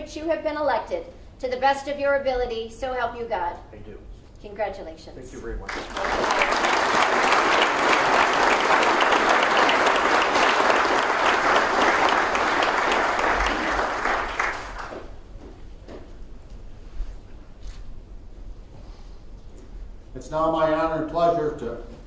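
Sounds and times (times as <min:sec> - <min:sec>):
audience applauding: 0:05.7 - 0:15.2.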